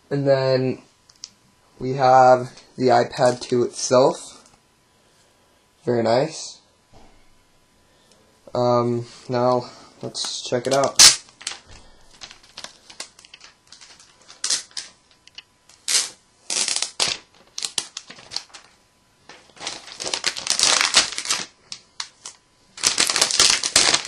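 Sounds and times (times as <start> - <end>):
plastic wrapping crinkling: 10.2 - 24.0.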